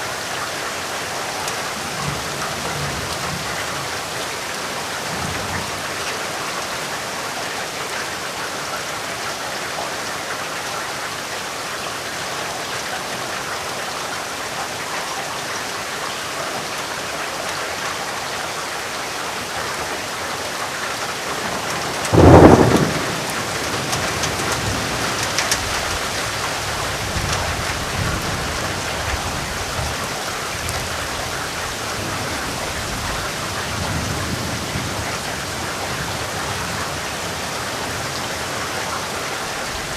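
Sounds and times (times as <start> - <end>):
steady rain falling: 0.0 - 39.9
low thunder rumbles: 21.4 - 30.0
loud thunderclap: 21.6 - 26.0.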